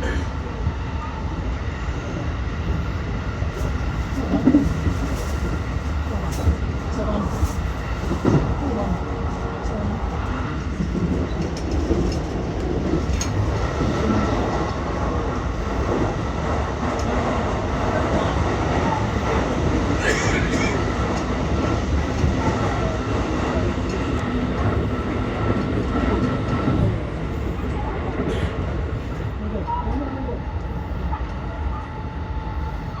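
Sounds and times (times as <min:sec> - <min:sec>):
train wheels rumbling on rail: 0:00.0 - 0:33.0
rail-joint clatter: 0:10.7 - 0:14.8.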